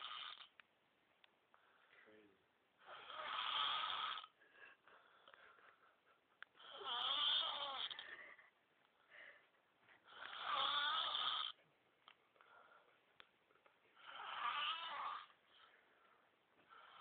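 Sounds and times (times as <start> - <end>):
man snoring: 0.0 - 0.5, 2.8 - 4.4, 6.6 - 8.0, 10.1 - 11.6, 14.0 - 15.3
faint breath: 7.9 - 10.1, 12.3 - 13.2.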